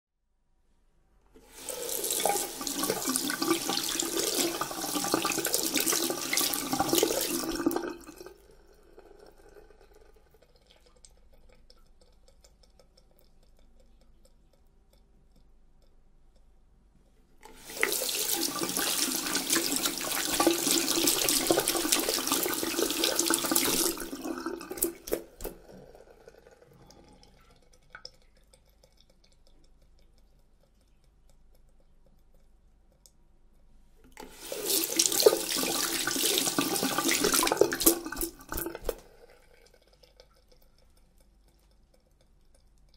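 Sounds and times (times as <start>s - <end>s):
water dripping: 1.3s - 42.9s
tap water running over hands: 1.4s - 8.3s, 17.5s - 25.9s, 34.2s - 39.2s.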